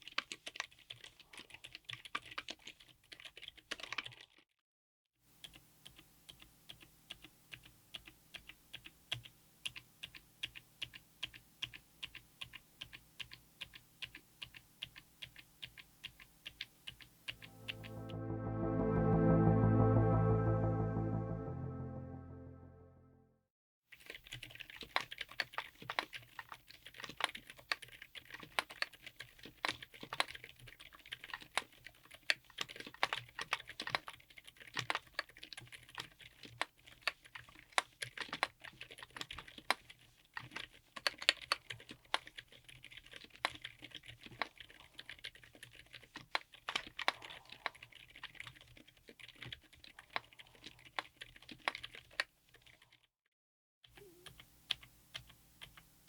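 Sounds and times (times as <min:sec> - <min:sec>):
mechanical keyboard typing: 0:00.0 - 0:04.4, 0:05.4 - 0:17.1, 0:24.1 - 0:52.9.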